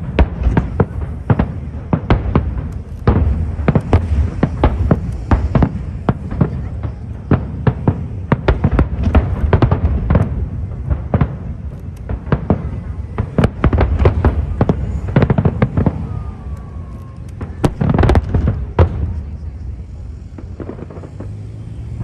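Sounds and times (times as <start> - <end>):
fireworks bangs and crackles: 0.0 - 22.0.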